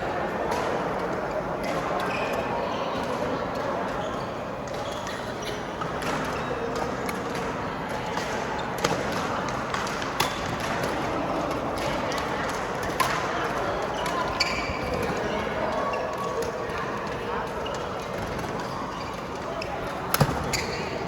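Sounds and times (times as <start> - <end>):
people talking: 0.0 - 21.0
rackets hitting shuttlecock: 19.6 - 21.0.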